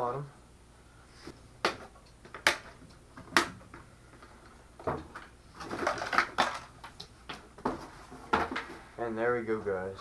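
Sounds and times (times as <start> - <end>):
plastic rattling and rustling: 1.7 - 8.9.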